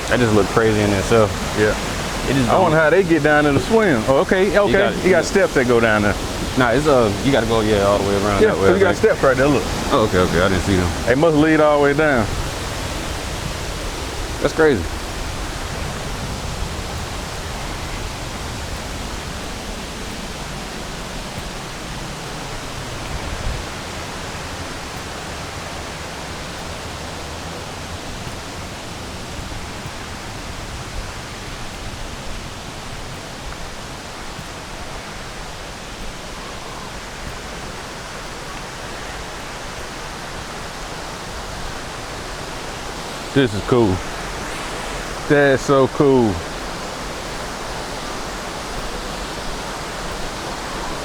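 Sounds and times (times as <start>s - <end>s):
waterfall rushing: 0.0s - 51.0s.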